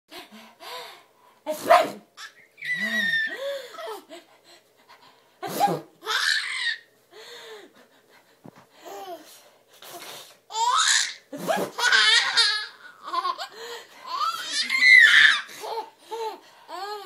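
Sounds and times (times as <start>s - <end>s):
woman sneezing: 5.4s - 5.9s
baby giggling: 10.5s - 16.4s.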